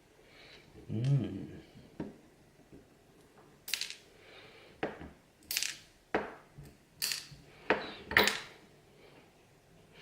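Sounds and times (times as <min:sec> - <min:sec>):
small metal parts clicking and dropping: 0:03.7 - 0:04.1, 0:05.4 - 0:05.9, 0:07.0 - 0:07.4, 0:08.1 - 0:08.6.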